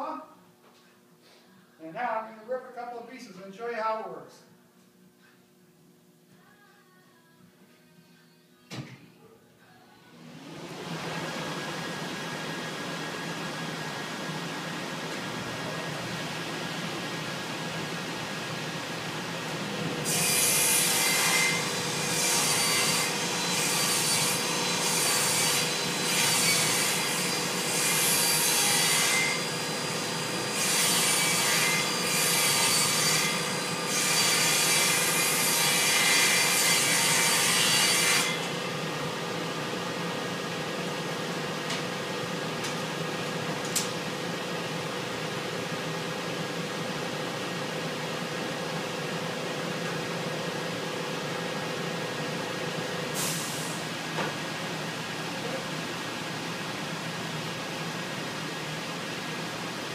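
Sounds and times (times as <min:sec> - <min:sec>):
table saw cutting plywood: 0:19.9 - 0:39.0.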